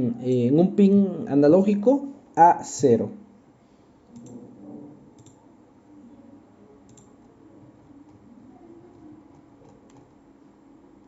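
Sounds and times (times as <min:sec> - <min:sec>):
faint room noise: 0:00.0 - 0:11.0
computer mouse clicking: 0:04.1 - 0:04.5, 0:05.2 - 0:05.4, 0:06.9 - 0:07.1, 0:08.9 - 0:10.2.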